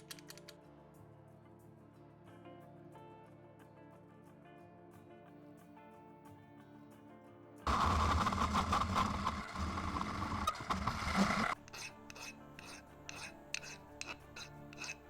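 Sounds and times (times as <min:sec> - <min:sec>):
hand file rasping: 0:07.7 - 0:15.0.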